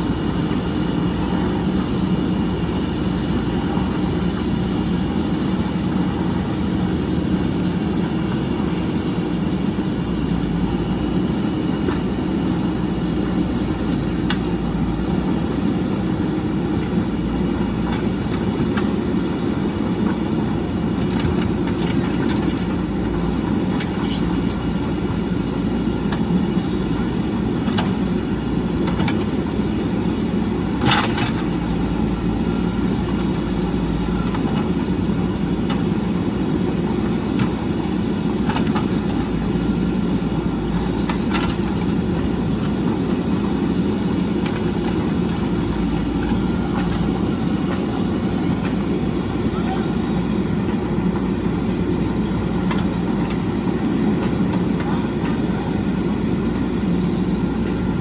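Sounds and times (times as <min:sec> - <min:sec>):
diesel engine running: 0:00.0 - 0:58.0.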